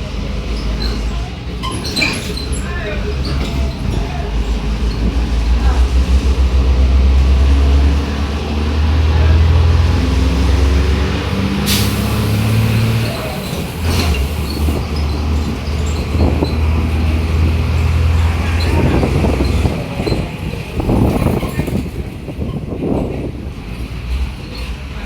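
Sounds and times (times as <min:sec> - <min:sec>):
bus diesel engine running: 0:00.0 - 0:25.0
air brake hiss: 0:11.6 - 0:12.7.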